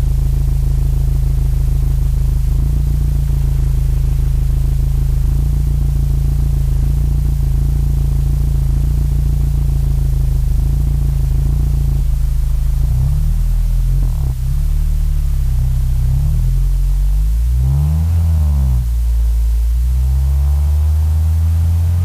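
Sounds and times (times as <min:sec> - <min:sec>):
car exhaust idling drone: 0:00.0 - 0:22.0
noisy hiss: 0:00.0 - 0:22.0.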